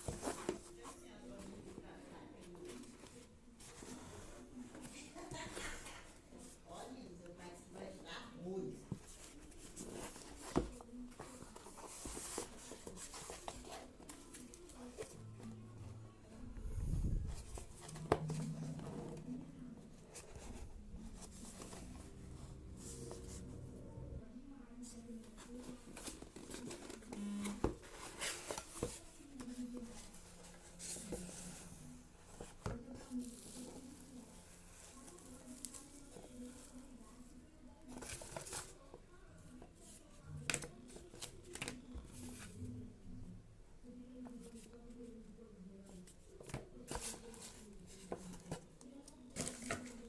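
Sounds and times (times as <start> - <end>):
packaging rustling and scratching: 25.2 - 36.8.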